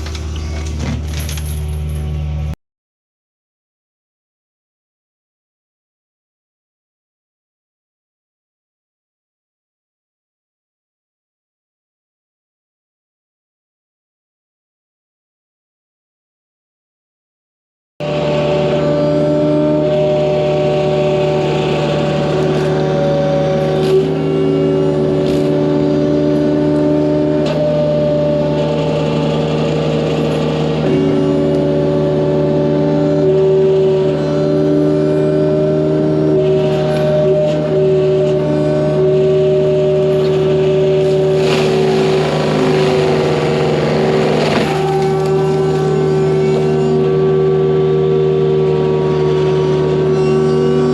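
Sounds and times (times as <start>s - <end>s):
mulcher grinding wood: 0.0s - 2.5s, 18.0s - 50.9s
diesel engine hum: 0.0s - 2.6s, 18.0s - 50.9s
hydraulic whine: 0.0s - 2.6s, 18.0s - 50.9s.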